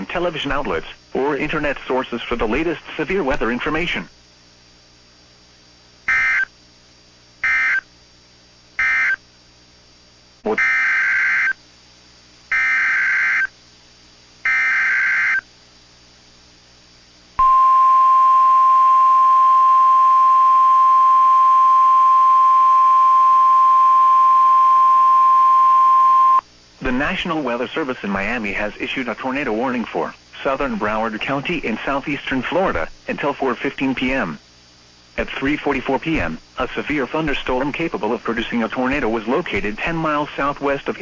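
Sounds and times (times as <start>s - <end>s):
steady alarm tone: 6.1s - 6.5s, 7.4s - 7.9s, 8.8s - 9.2s, 10.5s - 11.6s, 12.5s - 13.6s, 14.4s - 15.5s, 17.4s - 26.4s.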